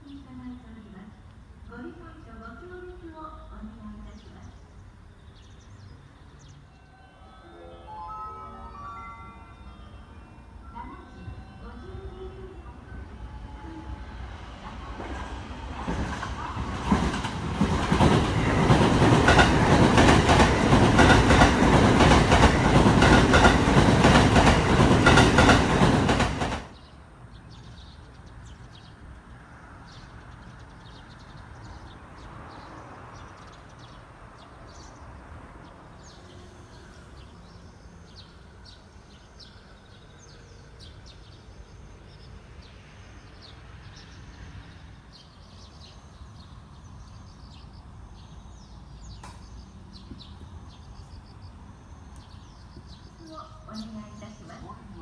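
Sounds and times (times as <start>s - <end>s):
train wheels clattering over rail joints: 15.0s - 26.7s.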